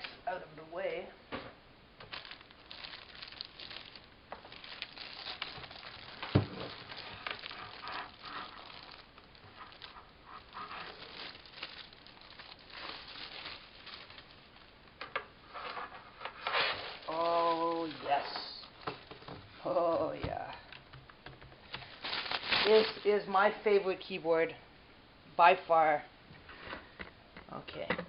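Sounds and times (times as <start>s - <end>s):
plastic packaging crinkling: 2.0s - 20.1s, 20.7s - 23.5s.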